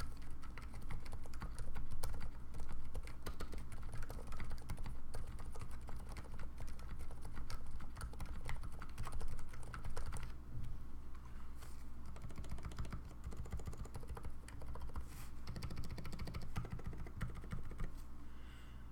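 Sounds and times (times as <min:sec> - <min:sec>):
typing on mechanical keyboard: 0:00.0 - 0:10.4, 0:12.0 - 0:17.9.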